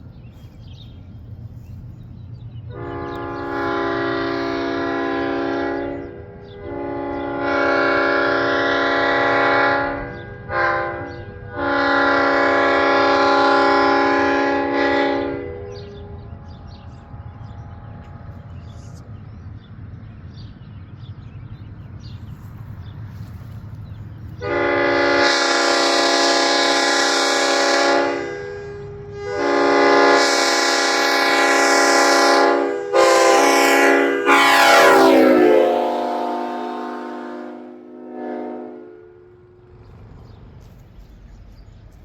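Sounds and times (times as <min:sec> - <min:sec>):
air horn chord blasts: 0:02.7 - 0:16.2, 0:24.4 - 0:39.6
low rumble: 0:15.6 - 0:24.4.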